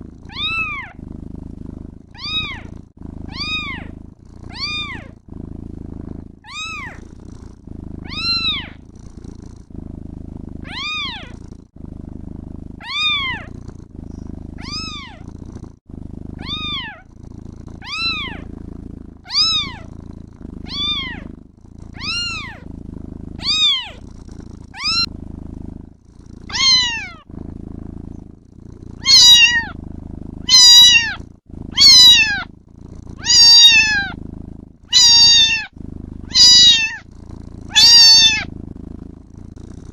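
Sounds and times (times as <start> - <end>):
low purr: 0.0 - 39.9
kitten meowing: 0.3 - 1.0, 2.2 - 2.7, 3.3 - 5.2, 6.4 - 7.0, 8.0 - 8.8, 10.6 - 11.4, 12.8 - 13.5, 14.6 - 15.2, 16.4 - 17.0, 17.8 - 18.5, 19.3 - 19.9, 20.6 - 21.3, 22.0 - 22.6, 23.4 - 24.0, 24.8 - 25.1, 26.5 - 27.2, 29.0 - 29.8, 30.4 - 32.5, 33.2 - 34.2, 34.9 - 35.7, 36.3 - 37.0, 37.7 - 38.5.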